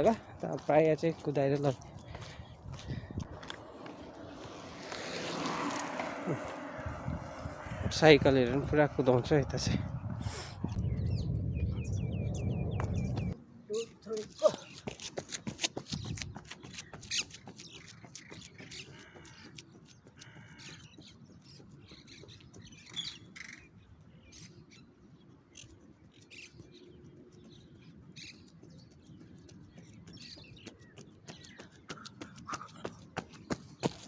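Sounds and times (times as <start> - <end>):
wild birds calling: 0.0 - 7.8, 16.6 - 24.9.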